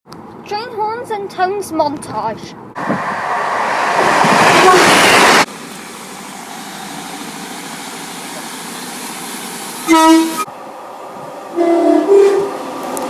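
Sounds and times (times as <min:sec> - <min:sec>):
rail noise: 0:00.1 - 0:13.0
train horn blast: 0:04.5 - 0:05.4, 0:09.8 - 0:10.5, 0:11.5 - 0:12.7.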